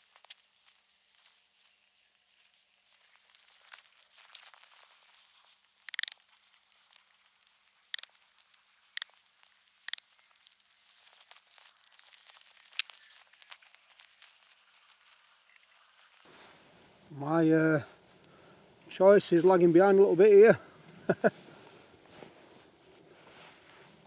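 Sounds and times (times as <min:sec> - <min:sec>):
wood fire crackling: 0:02.4 - 0:19.0
sharp pops of burning wood: 0:12.2 - 0:13.6.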